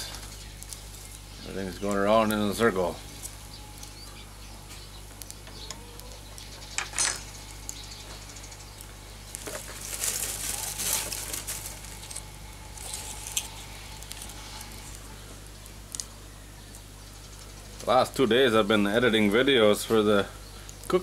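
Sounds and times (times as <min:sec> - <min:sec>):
campfire crackling: 0:00.0 - 0:21.0.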